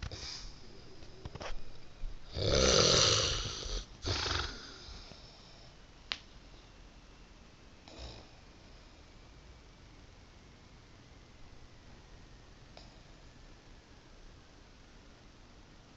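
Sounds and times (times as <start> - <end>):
person snoring: 2.3 - 5.2.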